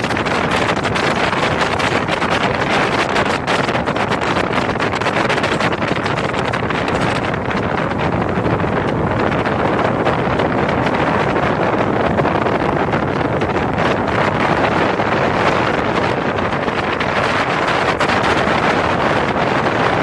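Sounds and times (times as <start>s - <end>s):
speedboat engine running: 0.0s - 20.0s
wind rushing on microphone: 0.0s - 20.0s.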